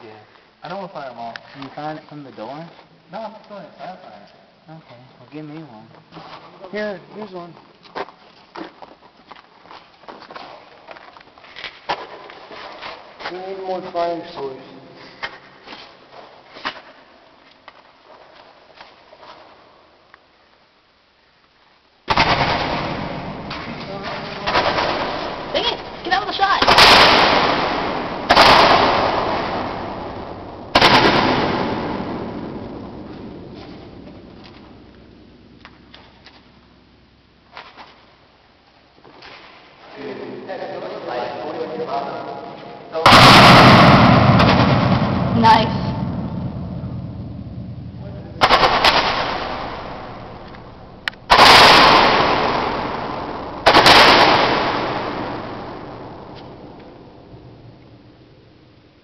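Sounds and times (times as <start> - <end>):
roman candle bangs with echo: 22.1 - 35.3, 43.0 - 47.3, 48.4 - 56.8.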